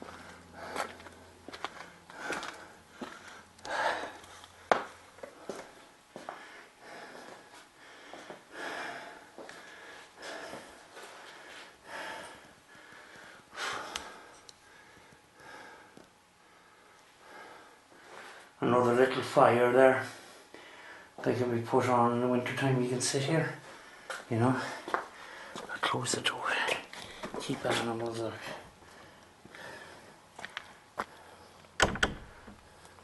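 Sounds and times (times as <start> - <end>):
close footsteps: 0.0 - 6.5, 23.6 - 31.7
person breathing: 0.0 - 18.6, 20.0 - 21.2, 23.6 - 25.7, 26.4 - 27.4, 28.4 - 31.6.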